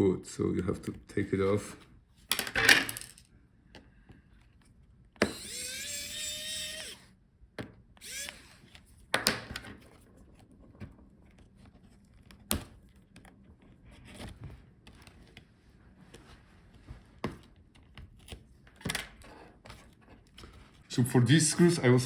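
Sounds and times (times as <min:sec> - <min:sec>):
electric screwdriver whirring: 0:05.2 - 0:07.2, 0:08.0 - 0:08.9.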